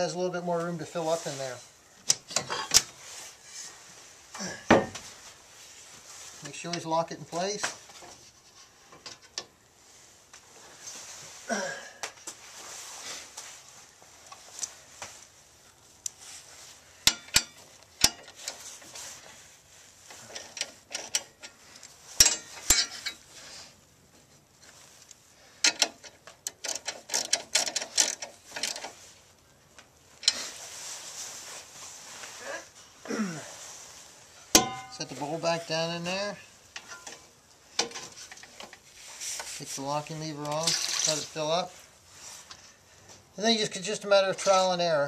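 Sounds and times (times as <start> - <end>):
metal parts clicking and clinking: 17.0 - 18.6, 20.1 - 23.2, 25.6 - 29.0, 40.5 - 41.3
metal scraping and rubbing: 40.5 - 41.7.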